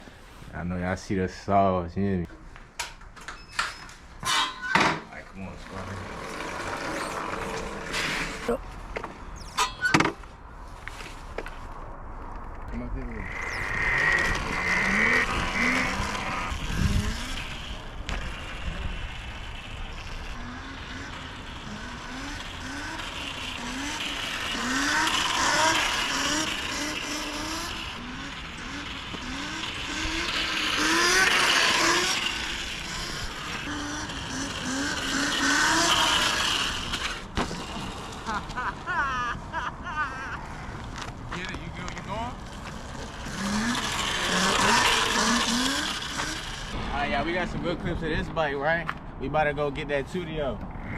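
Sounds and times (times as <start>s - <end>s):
rush of tyre and wind noise: 9.2s - 39.8s
electric motorbike motor whine: 13.2s - 38.3s, 42.4s - 46.8s.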